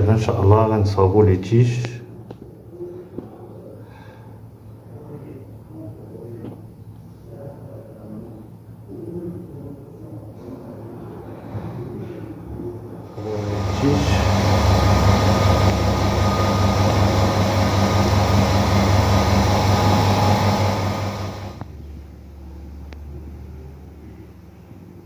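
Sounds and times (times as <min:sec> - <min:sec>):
electric machine humming: 0:13.1 - 0:21.7.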